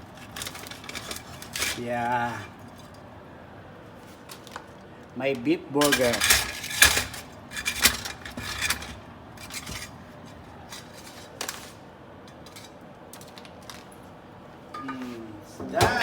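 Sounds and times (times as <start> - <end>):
dishes and utensils clattering: 0.0 - 3.0, 5.8 - 13.8, 14.7 - 16.0.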